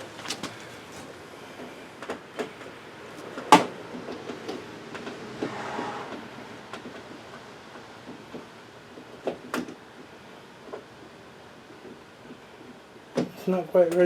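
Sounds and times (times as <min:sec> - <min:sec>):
brief metal scrape: 0:05.4 - 0:06.2.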